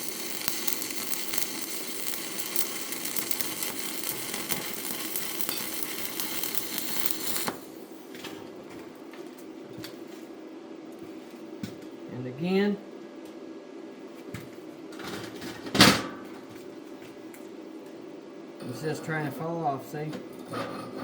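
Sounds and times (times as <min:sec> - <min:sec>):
welding arc crackling sizzle: 0:00.0 - 0:08.2.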